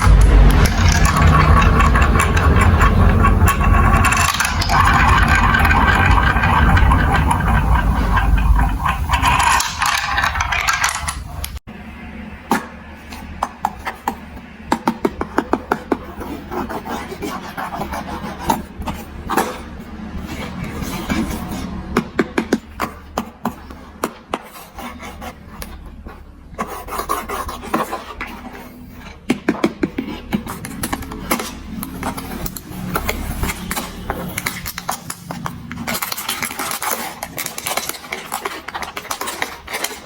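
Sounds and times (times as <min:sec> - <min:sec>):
marbles clicking through track: 0:00.0 - 0:11.6
marbles rolling down plastic track: 0:00.0 - 0:11.6.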